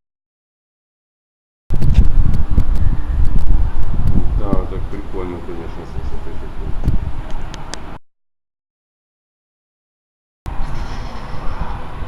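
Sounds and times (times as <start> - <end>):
low rumble: 1.7 - 8.0
wind buffeting microphone: 1.7 - 8.0, 10.5 - 12.0.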